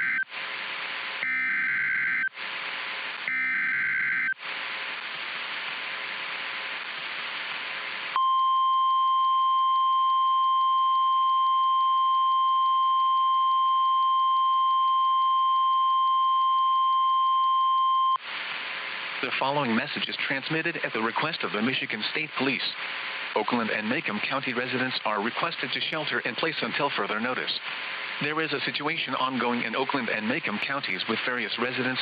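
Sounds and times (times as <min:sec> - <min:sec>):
radio static: 0:00.0 - 0:08.2, 0:18.2 - 0:32.0.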